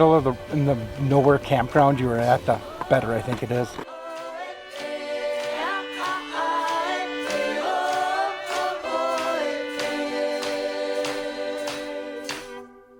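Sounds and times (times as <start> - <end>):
music with singing over a beat: 2.2 - 12.7.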